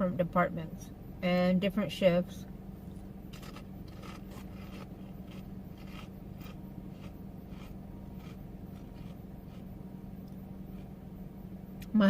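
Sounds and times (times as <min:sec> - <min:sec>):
steady low hum: 0:00.0 - 0:12.0
chips being chewed: 0:03.3 - 0:09.7.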